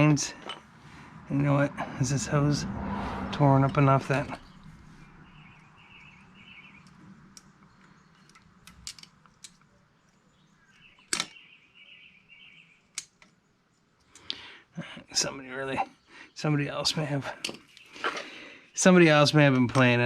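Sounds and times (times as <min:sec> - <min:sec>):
small engine parts clicking: 0:06.8 - 0:11.4.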